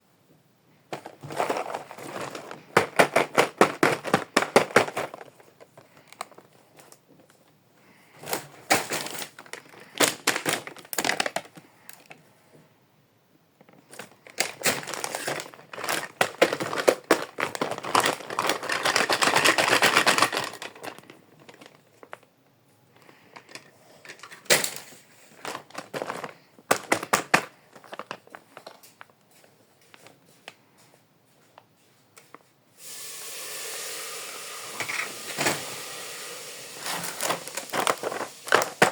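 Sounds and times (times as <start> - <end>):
plastic rustling: 0.7 - 12.6, 13.5 - 32.6, 36.7 - 38.9
plastic packaging crinkling: 0.9 - 12.2, 13.6 - 30.6, 36.7 - 38.9.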